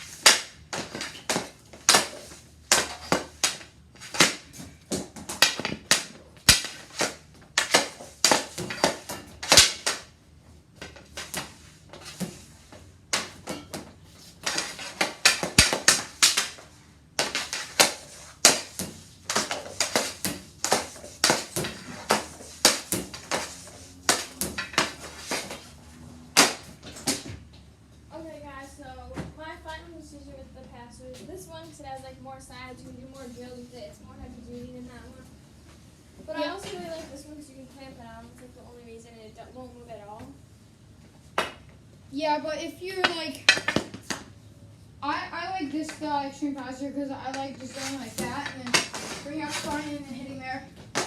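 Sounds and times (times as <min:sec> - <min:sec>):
hockey stick hitting pucks: 0:00.0 - 0:10.1, 0:10.8 - 0:27.4, 0:42.9 - 0:44.3, 0:47.2 - 0:51.0
pucks clacking off passers: 0:00.0 - 0:10.2, 0:10.8 - 0:27.6, 0:42.8 - 0:44.4, 0:45.1 - 0:51.0.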